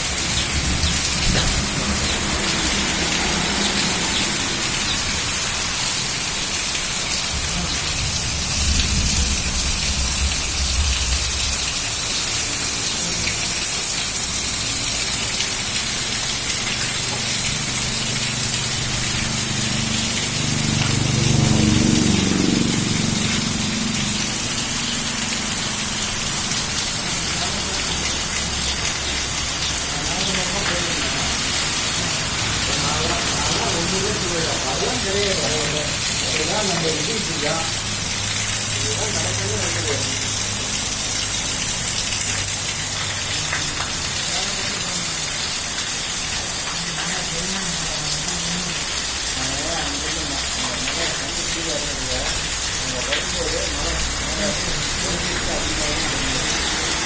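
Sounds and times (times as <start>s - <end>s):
heavy rain: 0.0s - 57.0s
low rumble: 7.8s - 12.5s.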